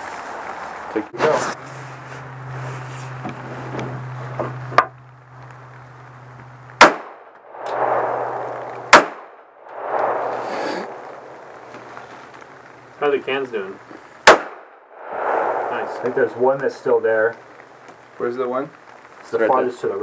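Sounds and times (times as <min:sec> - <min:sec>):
faint sharp crack: 0:06.7 - 0:12.8
pistol shots: 0:06.8 - 0:07.3, 0:08.8 - 0:10.0, 0:14.2 - 0:14.8.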